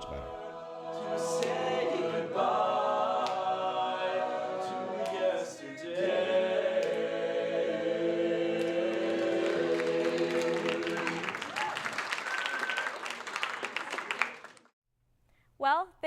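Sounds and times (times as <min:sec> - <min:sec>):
male choir singing a chord: 0:00.0 - 0:11.4
audience applause: 0:08.7 - 0:14.7.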